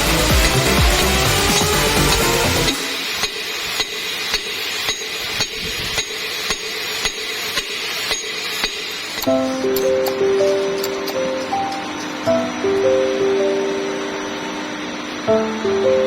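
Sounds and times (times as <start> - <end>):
music with sustained tones: 0.0 - 3.2, 9.2 - 16.0.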